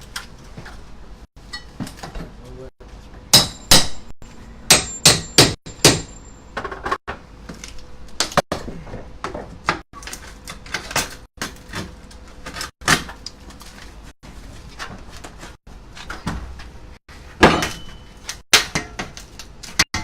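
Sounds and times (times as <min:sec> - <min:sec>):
hammer striking window frame: 0:03.4 - 0:04.1, 0:04.7 - 0:06.1.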